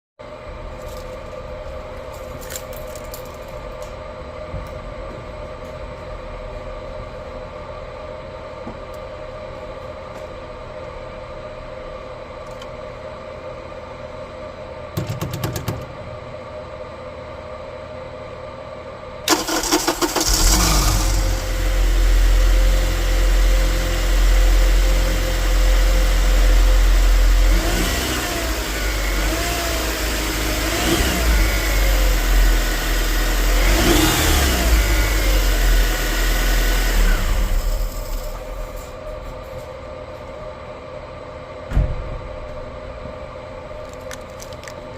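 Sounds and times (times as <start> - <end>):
steady hum: 0.2 - 36.2, 36.9 - 44.9
car engine starting and sputtering: 19.3 - 38.5.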